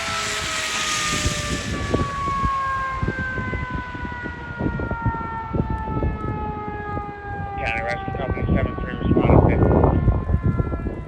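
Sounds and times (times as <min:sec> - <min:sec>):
loud rushing hiss: 0:00.0 - 0:02.4
mechanical siren winding down: 0:00.0 - 0:11.0
wind buffeting microphone: 0:00.0 - 0:11.0.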